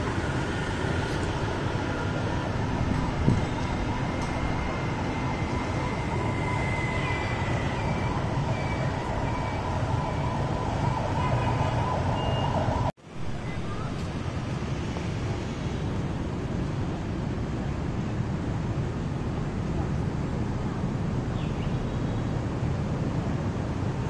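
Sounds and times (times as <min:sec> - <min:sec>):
street traffic noise: 0:00.0 - 0:24.0
short high vehicle horn beeps: 0:12.2 - 0:12.6.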